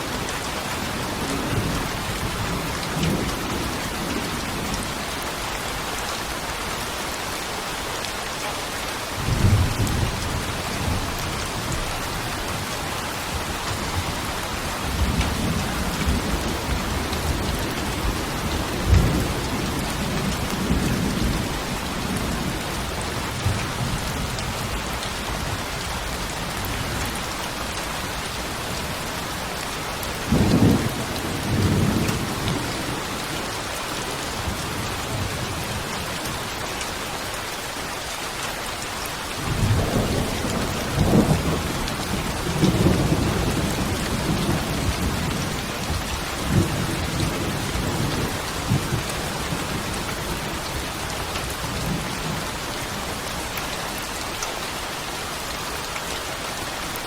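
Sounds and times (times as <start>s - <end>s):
steady rain falling: 0.0s - 57.0s
thunder rumbling: 39.5s - 50.8s.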